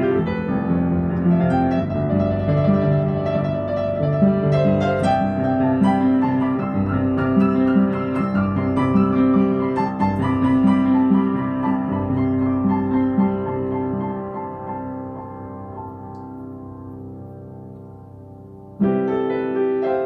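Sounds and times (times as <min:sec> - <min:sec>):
gentle piano music: 0:00.0 - 0:20.0.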